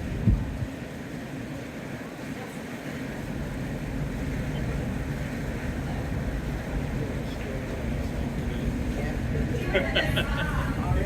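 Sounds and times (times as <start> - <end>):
wind on microphone: 0.0 - 1.7
ship engine low rumble: 0.0 - 11.0.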